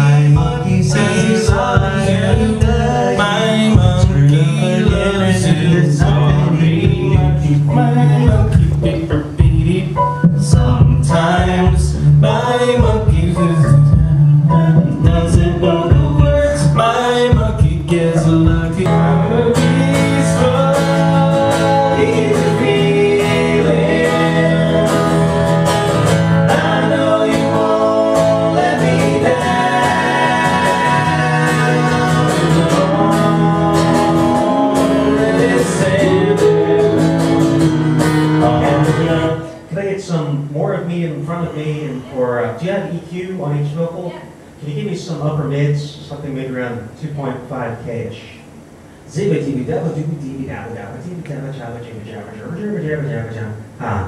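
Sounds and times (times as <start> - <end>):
strummed guitar: 0.0 - 39.8
voices singing: 0.0 - 42.4.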